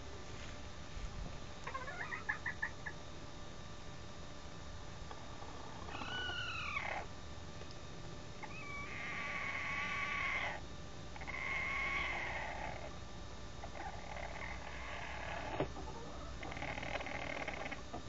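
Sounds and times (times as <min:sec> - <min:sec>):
chicken calling: 0:01.6 - 0:03.0, 0:05.7 - 0:07.1, 0:08.4 - 0:10.6, 0:11.2 - 0:12.9.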